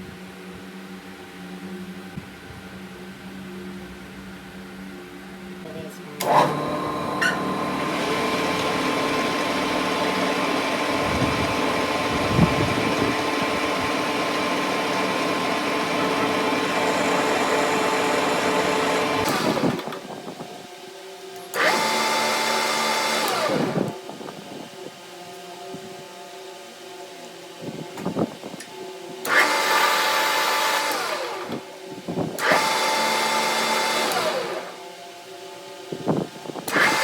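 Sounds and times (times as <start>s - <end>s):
power tool motor running: 6.2s - 20.7s, 21.4s - 25.5s, 27.6s - 35.1s, 36.0s - 37.0s.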